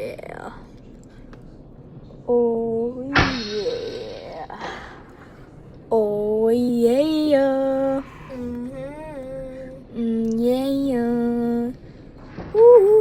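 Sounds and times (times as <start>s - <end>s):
woman singing long notes: 5.9s - 11.8s, 12.5s - 13.0s.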